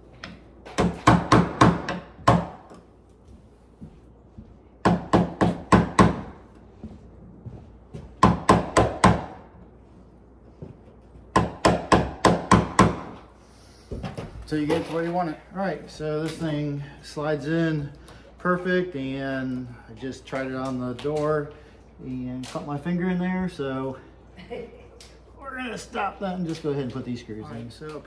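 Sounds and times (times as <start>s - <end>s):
hammer tapping a chisel into wood: 11.3s - 13.2s.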